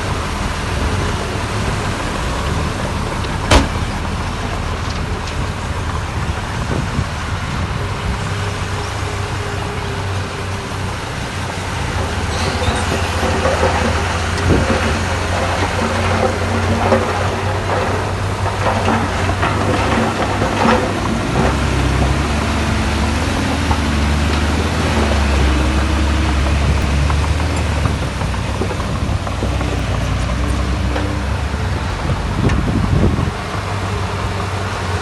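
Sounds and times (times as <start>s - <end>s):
diesel engine droning: 0.0s - 35.0s
metallic clanks and knocks: 3.2s - 4.2s, 11.7s - 33.4s.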